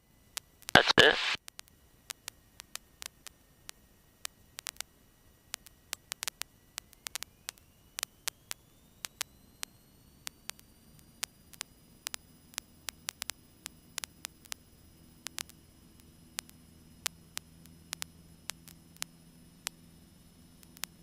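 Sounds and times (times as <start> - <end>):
faint hiss: 0.0 - 21.0
sharp irregular clicks: 4.2 - 4.9, 15.2 - 19.8
thin rising whine: 6.6 - 13.9.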